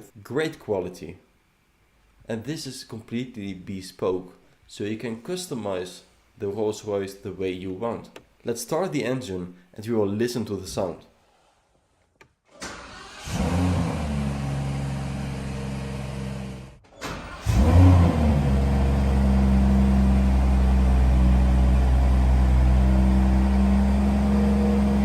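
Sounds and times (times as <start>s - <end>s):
car engine starting and idling: 12.5s - 25.0s
engine revving: 12.7s - 25.0s.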